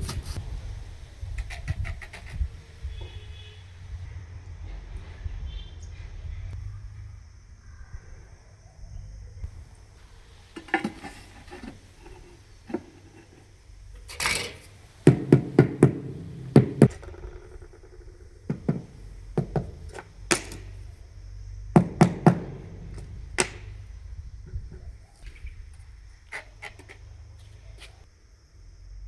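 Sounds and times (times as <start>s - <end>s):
tile scraping: 10.0s - 17.5s, 18.5s - 20.9s, 21.8s - 23.9s
tiles being tapped: 15.1s - 17.2s, 18.5s - 20.8s, 21.8s - 23.8s.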